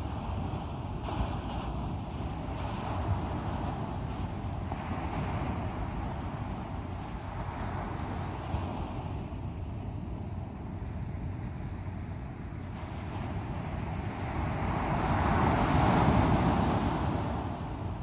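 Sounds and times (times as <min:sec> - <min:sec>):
sea waves surging: 0:12.4 - 0:18.0.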